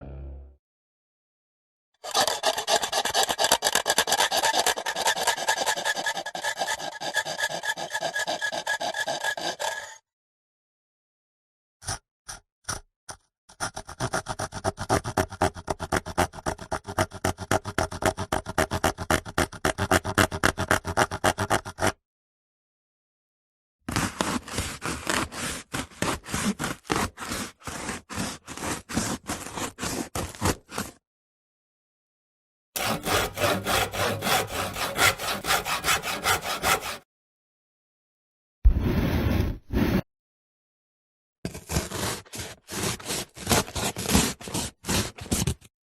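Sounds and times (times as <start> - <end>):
hand saw cutting wood: 2.0 - 10.0, 13.5 - 22.0, 23.9 - 31.0, 32.8 - 37.1, 41.5 - 45.6.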